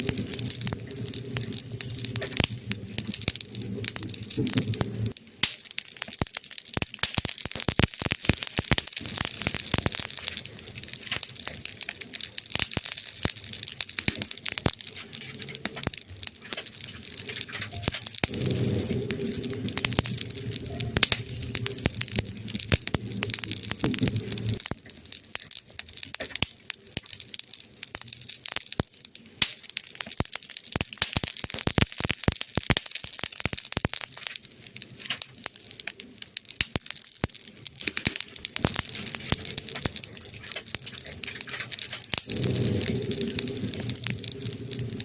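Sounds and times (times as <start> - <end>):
campfire crackling and popping: 0.0 - 45.0
low rumble: 14.5 - 24.7, 38.6 - 45.0.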